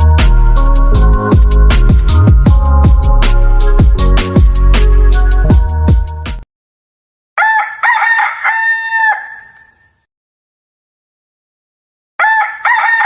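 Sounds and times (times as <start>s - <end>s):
rooster crowing: 7.4s - 9.9s, 12.2s - 13.0s.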